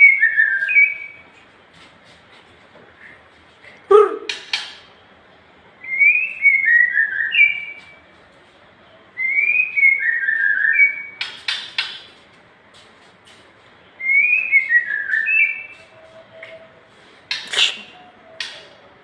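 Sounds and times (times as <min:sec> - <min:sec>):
bird whistling: 0:05.8 - 0:07.9, 0:09.2 - 0:11.2, 0:14.0 - 0:18.7
bird harsh clicks: 0:11.2 - 0:12.1, 0:17.2 - 0:18.7.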